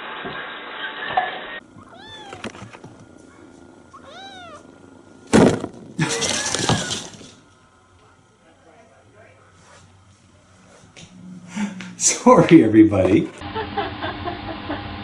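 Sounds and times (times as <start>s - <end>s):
cat meowing: 1.7s - 2.8s, 3.9s - 4.8s.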